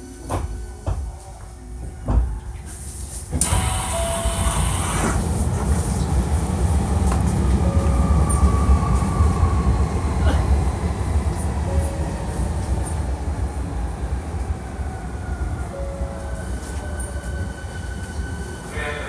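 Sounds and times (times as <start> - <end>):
train wheels rumbling on rails: 0.2 - 19.0
rail joint clicks: 3.3 - 9.2.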